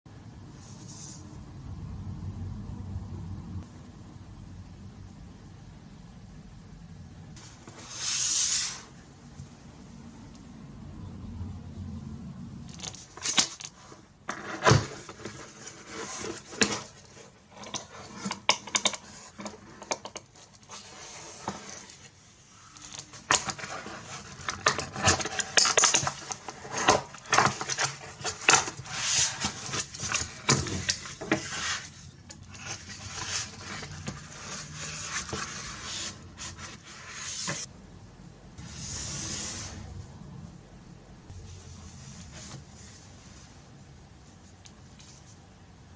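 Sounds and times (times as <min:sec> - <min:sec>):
packaging handling clicks and rustles: 0:22.6 - 0:35.8.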